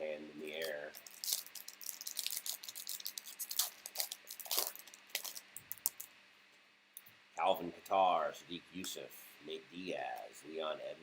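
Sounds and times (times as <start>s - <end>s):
cards and foil wrapper crackling: 0.5s - 6.1s.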